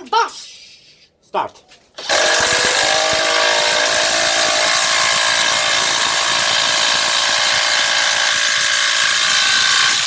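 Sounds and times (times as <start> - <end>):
impact driver whining and rattling: 2.0 - 10.0.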